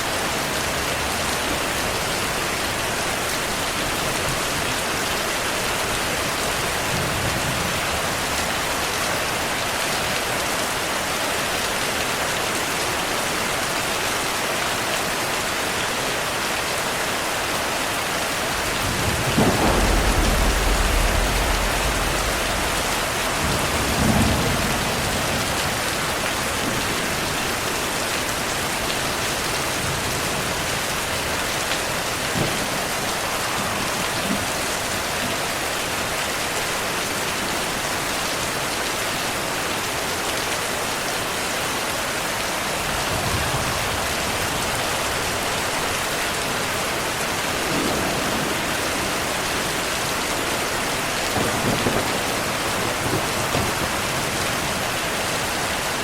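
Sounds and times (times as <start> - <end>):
heavy rain falling: 0.0 - 56.0
thunder rumbling: 18.4 - 27.5, 47.2 - 55.0.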